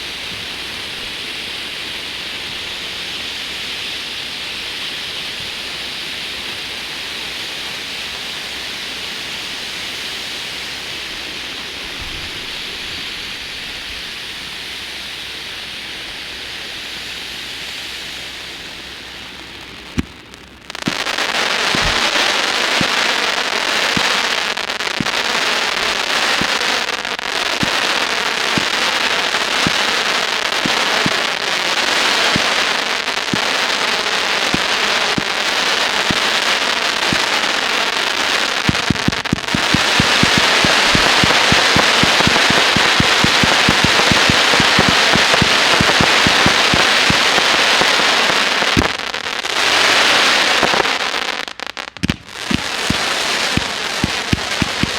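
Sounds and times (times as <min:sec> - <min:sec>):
fireworks hissing and popping: 0:00.0 - 0:54.9.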